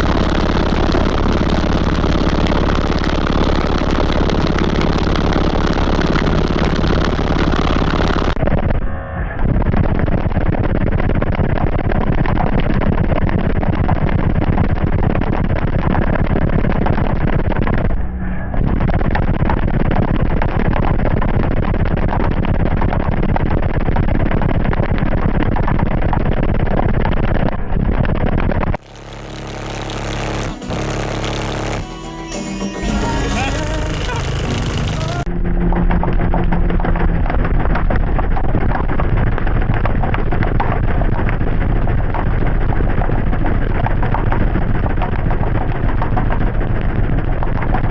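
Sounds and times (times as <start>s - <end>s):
loud heavy subwoofer bass: 0.0s - 11.4s, 28.8s - 31.9s, 32.8s - 39.2s.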